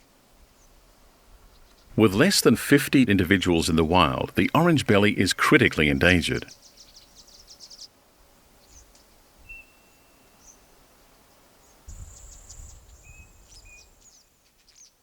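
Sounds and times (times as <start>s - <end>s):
small birds chirping and whistling: 6.5s - 7.9s, 8.6s - 10.7s, 11.6s - 15.0s.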